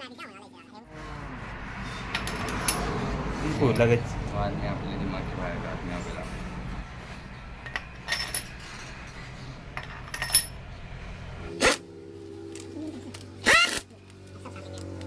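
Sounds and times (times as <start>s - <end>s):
metal clattering: 7.5s - 10.7s
metal parts clinking: 7.6s - 10.6s.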